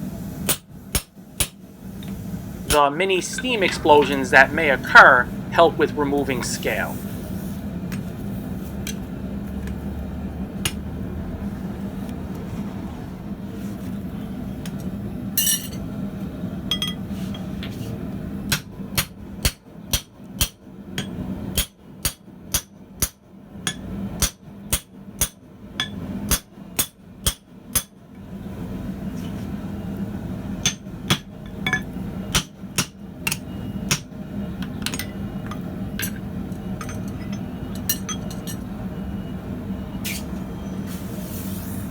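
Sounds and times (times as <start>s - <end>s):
low steady hum: 0.0s - 41.9s
hammer striking steel on anvil: 18.5s - 28.0s, 30.6s - 34.1s.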